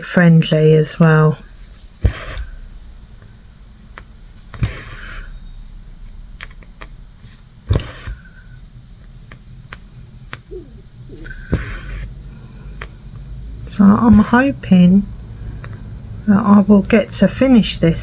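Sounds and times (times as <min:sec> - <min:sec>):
needle and thread rasp: 0:02.0 - 0:02.6, 0:04.5 - 0:05.3, 0:07.7 - 0:08.4, 0:10.6 - 0:12.1.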